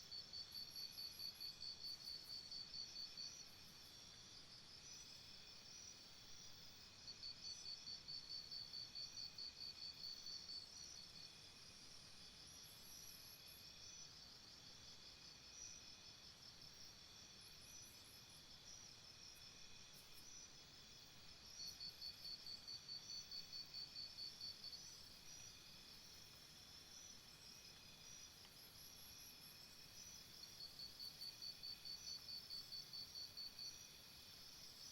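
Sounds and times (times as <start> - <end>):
fast loud insect chirp: 0.2 - 34.9
insects chirring: 16.7 - 34.9.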